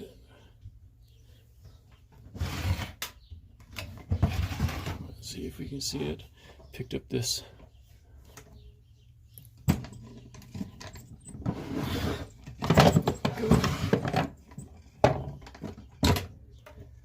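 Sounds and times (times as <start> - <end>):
toolbox rattling clatter: 9.6 - 16.3.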